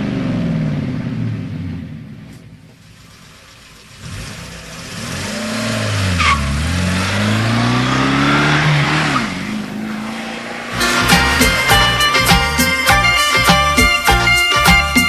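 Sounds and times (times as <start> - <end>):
keyboard race car engine revving: 4.0 - 15.0
rising rush of noise: 7.2 - 13.1.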